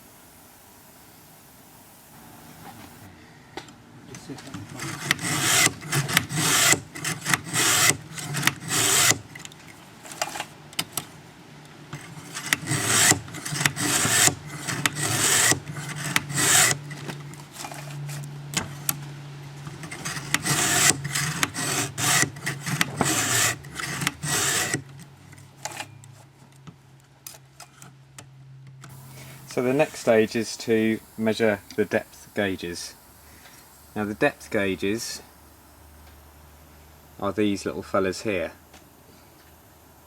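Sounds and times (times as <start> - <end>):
file rasping on steel: 4.7 - 9.3, 12.1 - 16.9, 19.8 - 24.8.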